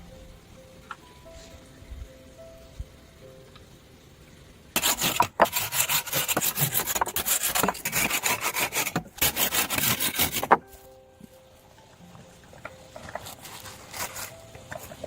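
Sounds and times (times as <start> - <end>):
hand saw cutting wood: 4.8 - 10.6.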